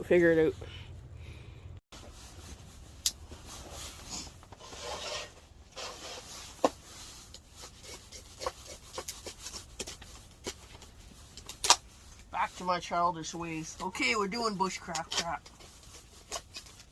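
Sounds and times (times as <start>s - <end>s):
wood scraping and shaving: 3.4s - 16.9s.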